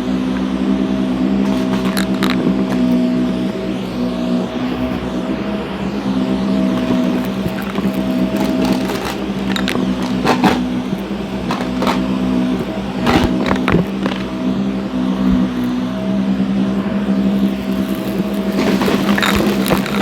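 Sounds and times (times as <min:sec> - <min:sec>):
vacuum cleaner motor hum: 0:00.0 - 0:20.0
debris crackling in vacuum: 0:01.1 - 0:20.0.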